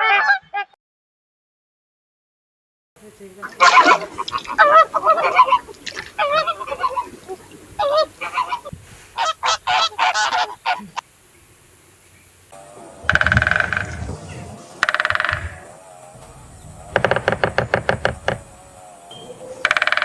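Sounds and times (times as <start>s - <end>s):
birds calling: 3.2s - 12.4s.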